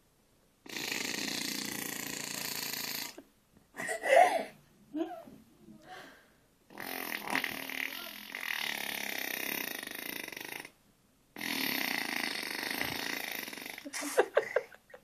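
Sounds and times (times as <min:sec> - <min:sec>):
person making rattling burp noise: 0:00.7 - 0:03.2, 0:06.7 - 0:10.8, 0:11.4 - 0:14.0.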